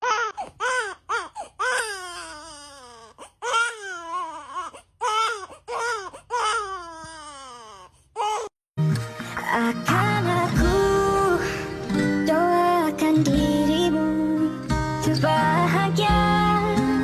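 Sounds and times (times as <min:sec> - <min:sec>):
infant crying: 0:00.0 - 0:08.6.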